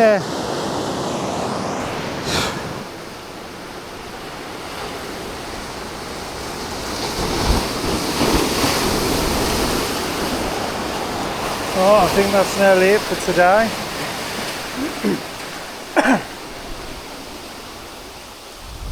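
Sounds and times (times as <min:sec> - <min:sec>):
ocean surf washing onto beach: 0:00.0 - 0:18.9
wind: 0:00.0 - 0:18.9
wind buffeting microphone: 0:16.5 - 0:18.9.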